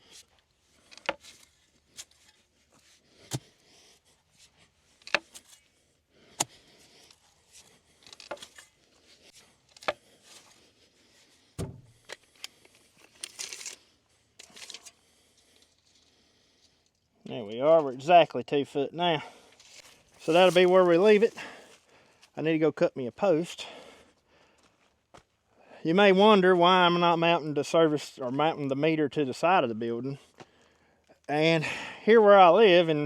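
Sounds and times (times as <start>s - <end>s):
dirt scraping and rustling: 0.0s - 16.0s, 19.6s - 21.8s
dull thud: 11.6s - 12.0s.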